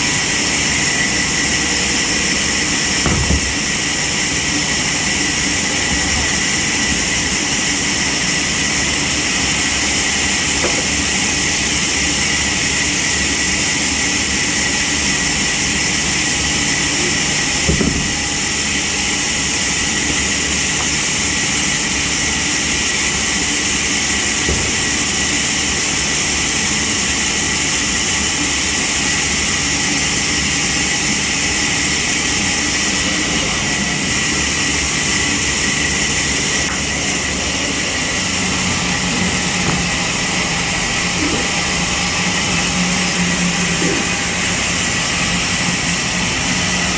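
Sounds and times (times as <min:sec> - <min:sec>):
sawmill machinery whining: 0:00.0 - 0:46.9
knock: 0:03.0 - 0:03.6, 0:17.7 - 0:18.2, 0:24.4 - 0:24.9.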